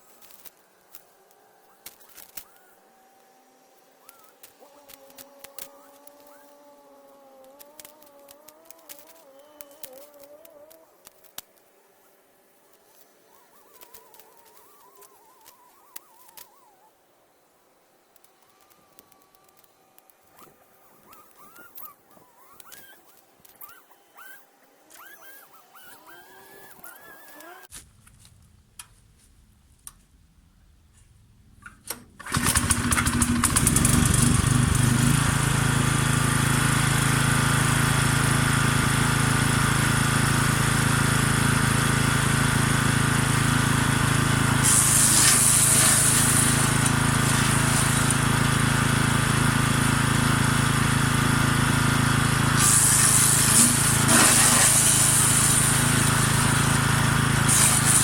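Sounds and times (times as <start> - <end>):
wood chipper engine running: 32.2 - 58.0
cuttings being shredded hissing: 44.6 - 48.6, 52.6 - 58.0.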